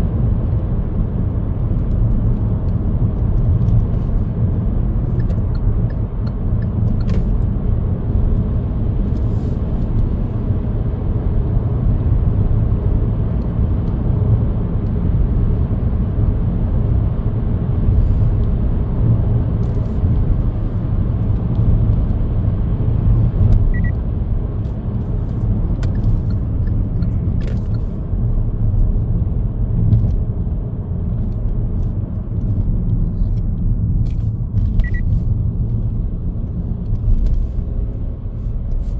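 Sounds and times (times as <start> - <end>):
car tyres and engine rumbling: 0.0 - 38.9
short high beep: 23.7 - 24.0.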